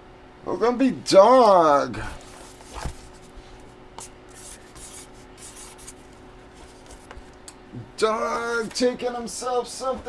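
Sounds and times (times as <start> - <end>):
hands rubbing packaging: 2.2 - 7.3.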